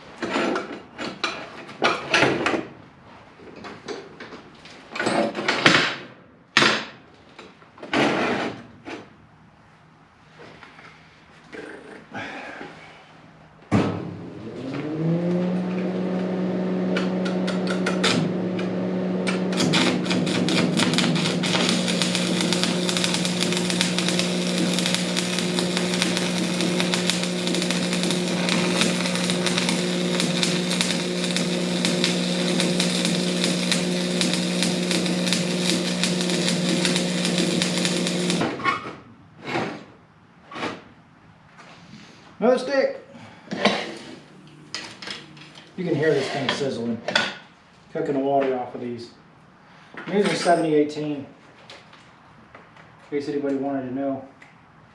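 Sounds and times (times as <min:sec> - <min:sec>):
welder hum: 0:14.4 - 0:38.6
welding arc crackle: 0:17.0 - 0:38.6.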